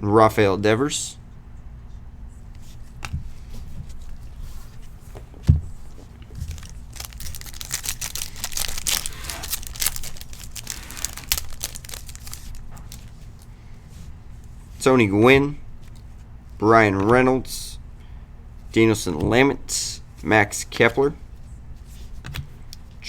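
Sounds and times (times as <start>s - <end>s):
dull thump: 5.2s - 5.8s
wrapper tearing and crinkling: 6.3s - 13.2s.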